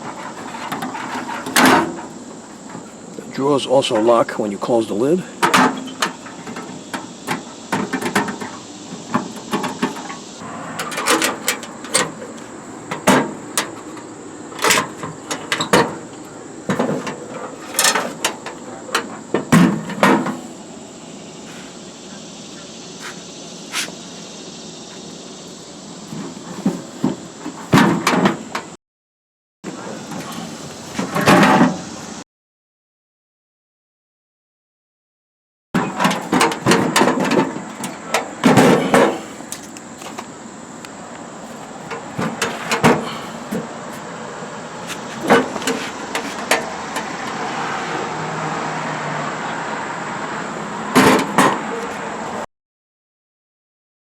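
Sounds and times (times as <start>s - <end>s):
metal drawers sliding: 0.0s - 3.0s, 5.4s - 20.6s, 35.8s - 40.4s, 41.4s - 44.2s, 44.8s - 47.5s, 50.9s - 52.3s
sheet steel clunks and rattles: 0.0s - 3.2s, 5.3s - 20.5s, 35.8s - 40.3s, 41.6s - 43.7s, 44.9s - 47.4s, 50.9s - 51.8s.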